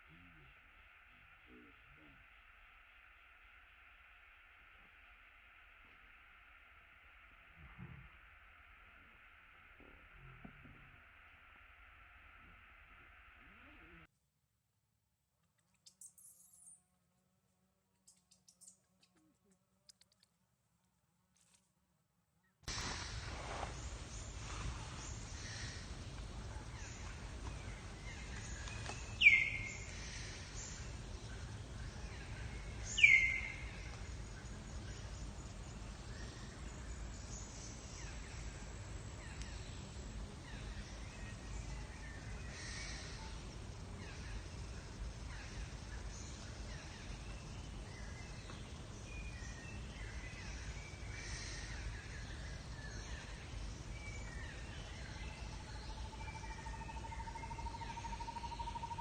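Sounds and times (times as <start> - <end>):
insect chirps: 0.0 - 14.1, 15.6 - 17.0, 18.0 - 20.4, 22.7 - 59.0
faint bird chirps: 15.7 - 16.9, 22.7 - 59.0.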